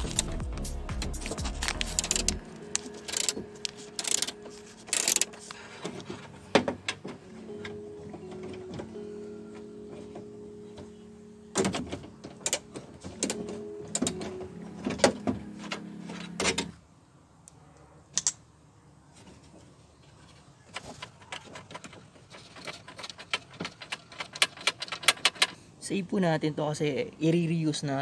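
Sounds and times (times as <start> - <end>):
background music: 0.0 - 16.8
small metal and plastic parts rattling: 1.6 - 7.2, 19.2 - 25.6.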